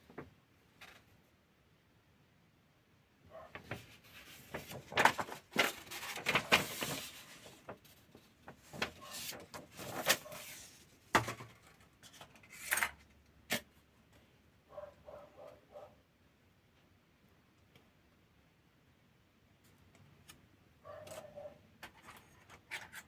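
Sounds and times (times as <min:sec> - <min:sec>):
packaging rustling: 0:03.6 - 0:10.8.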